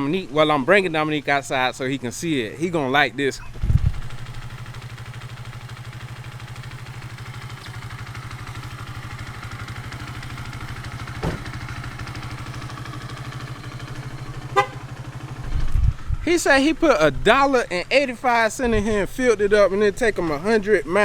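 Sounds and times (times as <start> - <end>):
motorcycle engine idling: 3.6 - 16.8
short knock: 11.2 - 11.5.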